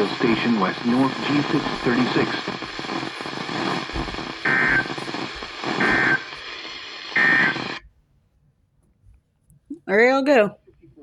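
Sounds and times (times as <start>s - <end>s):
radio static hiss: 0.0s - 7.8s.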